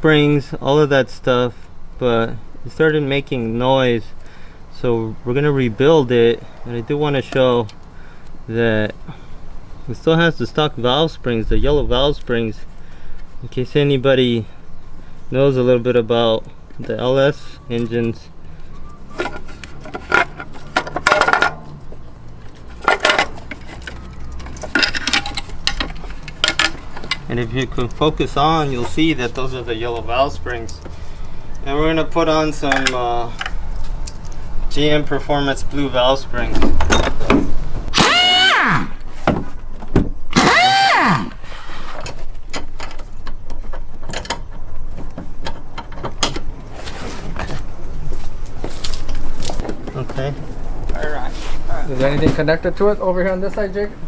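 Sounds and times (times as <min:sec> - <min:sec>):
metal tools clinking: 0:19.1 - 0:29.1
power tool motor whirring: 0:37.9 - 0:38.9, 0:40.3 - 0:41.4.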